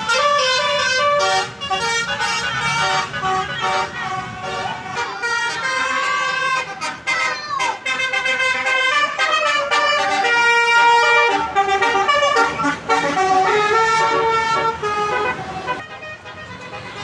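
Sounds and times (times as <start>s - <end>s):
musical air horn melody: 0.0s - 17.0s.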